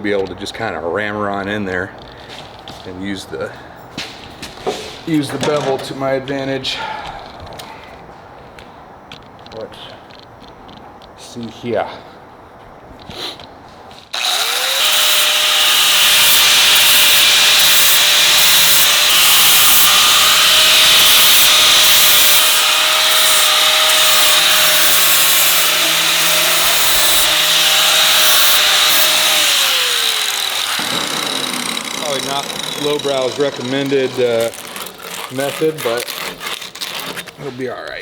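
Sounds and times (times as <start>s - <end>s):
power grinder grinding metal: 14.2s - 37.6s.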